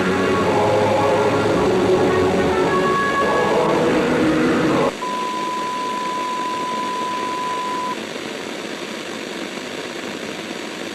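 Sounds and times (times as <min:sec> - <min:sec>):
static hiss: 0:00.0 - 0:10.9
steady high beep tone: 0:05.0 - 0:08.0.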